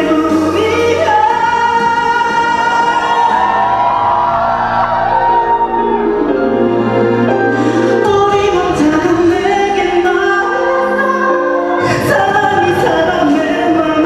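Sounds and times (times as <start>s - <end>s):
live pop ballad with band: 0.0s - 3.4s.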